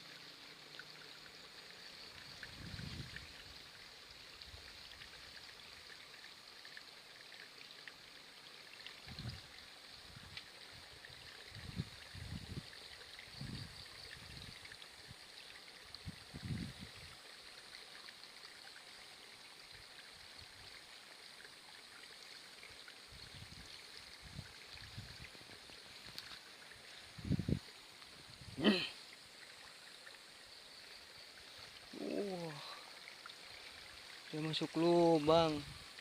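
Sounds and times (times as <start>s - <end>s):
water trickling: 0.0s - 36.0s.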